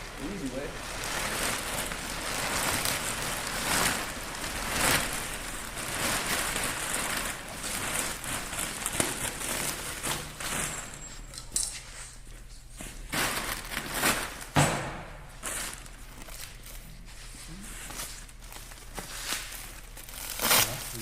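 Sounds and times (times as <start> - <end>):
packaging crinkling: 0.0 - 11.2, 13.0 - 14.6, 17.9 - 21.0.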